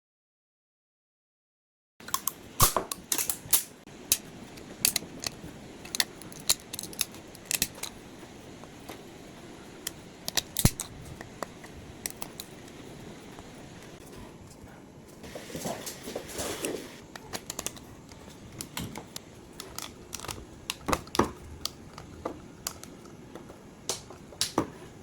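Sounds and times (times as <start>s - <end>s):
hard objects clicking and clacking: 2.0s - 9.1s, 9.7s - 14.0s, 17.0s - 24.7s.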